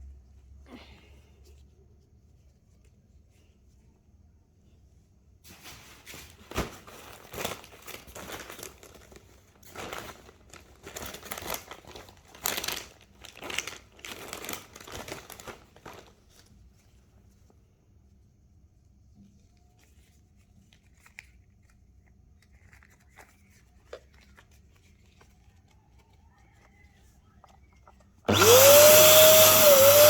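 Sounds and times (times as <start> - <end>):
crinkling and crackling handling: 5.5 - 17.6, 19.3 - 28.9.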